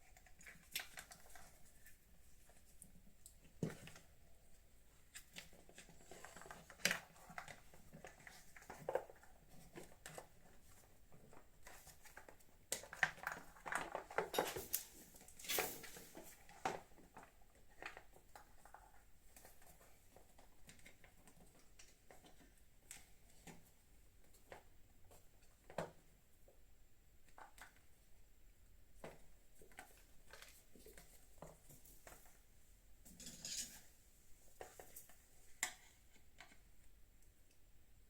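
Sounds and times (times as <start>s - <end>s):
clicks taps and rustles of parts: 5.1s - 26.1s.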